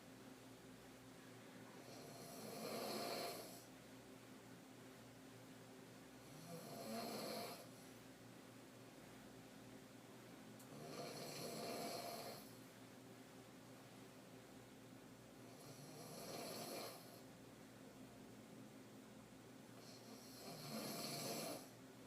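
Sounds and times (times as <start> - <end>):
woman snoring: 1.8 - 3.7, 6.2 - 7.7, 10.7 - 12.5, 15.5 - 17.2, 19.8 - 21.7.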